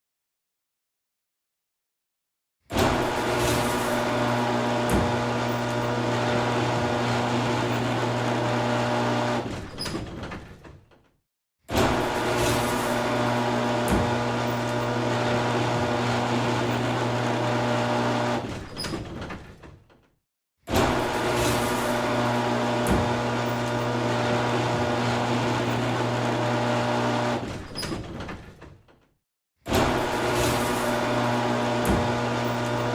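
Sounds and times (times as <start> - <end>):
garage door opener motor humming: 2.8 - 10.6, 11.7 - 19.6, 20.7 - 28.5, 29.7 - 32.9
garage door rattle: 2.8 - 11.1, 18.4 - 20.1, 20.7 - 29.1, 29.7 - 32.9.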